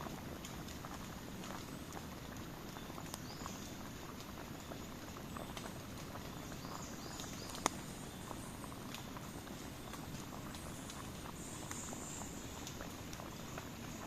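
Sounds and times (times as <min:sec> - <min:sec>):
campfire wood crackling: 0:00.0 - 0:14.0.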